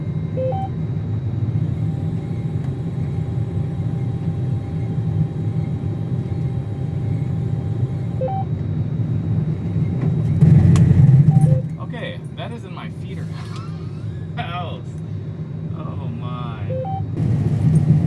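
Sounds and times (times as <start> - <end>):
combine harvester engine rumble: 0.0 - 18.0
faint steady whine: 0.0 - 18.0.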